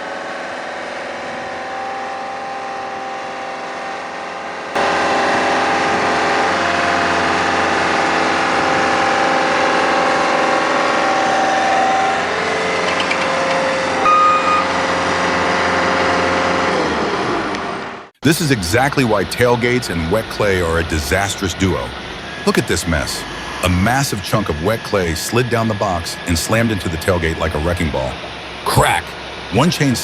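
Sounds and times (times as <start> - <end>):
diesel engine running: 0.0 - 30.0
brief high tone: 11.3 - 15.0.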